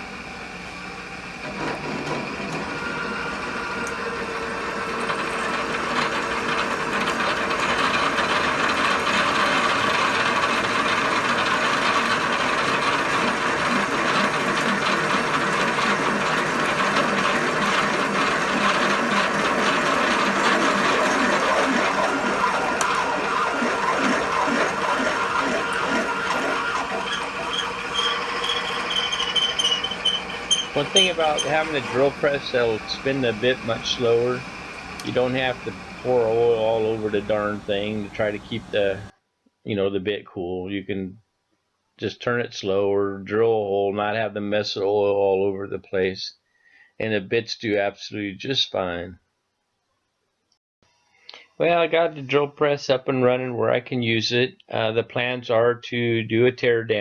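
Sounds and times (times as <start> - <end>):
drill press gears whirring: 0.0 - 39.1
drill bit cutting: 1.3 - 39.1.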